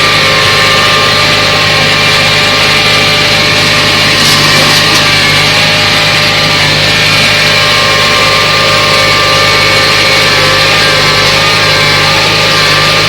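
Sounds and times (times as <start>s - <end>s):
machinery whine: 0.0s - 13.0s
tractor diesel engine: 0.0s - 13.0s
brief machinery clatter: 3.6s - 5.6s.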